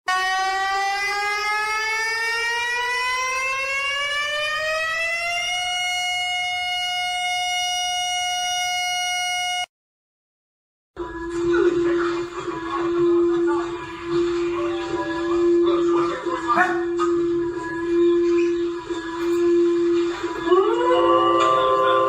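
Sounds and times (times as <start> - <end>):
civil defense siren winding up: 0.1 - 9.7, 16.9 - 22.0.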